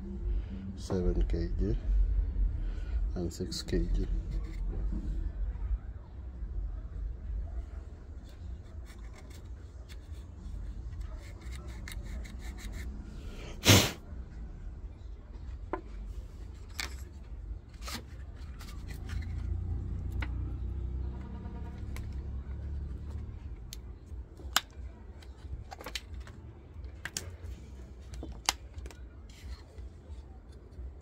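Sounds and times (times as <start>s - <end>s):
plastic housing clicks and taps: 24.4s - 26.4s, 28.1s - 29.0s.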